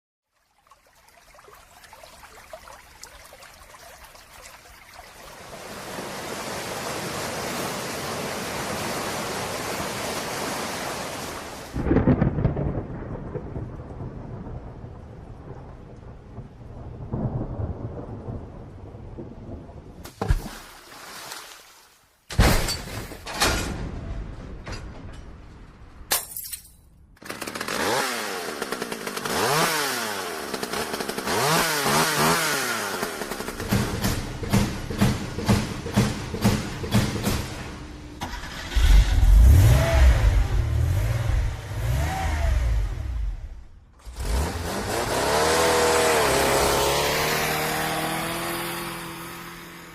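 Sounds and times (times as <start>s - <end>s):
rain-like hiss: 1.4s - 12.4s
sharp cracks: 27.2s - 39.3s
heavy low rumbles: 33.9s - 43.9s
engine-like whine: 37.8s - 49.9s.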